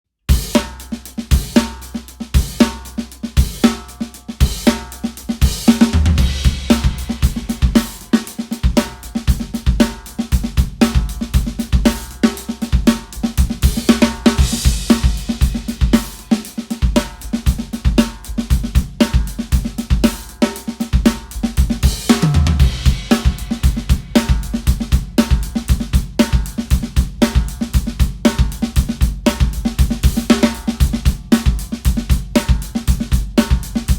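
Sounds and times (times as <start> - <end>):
drum kit groove: 0.3 - 33.9
low tom hits: 6.0 - 7.8, 21.9 - 25.2.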